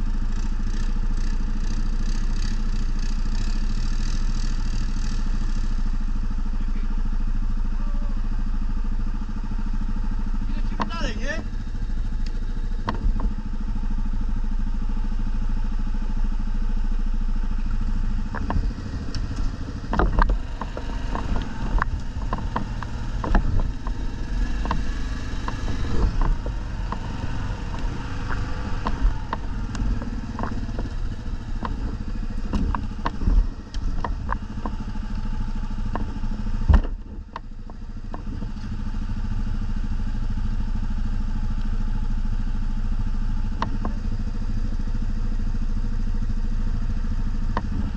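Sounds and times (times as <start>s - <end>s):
atv engine running: 0.0s - 47.9s
knocks and rattles: 18.3s - 34.8s.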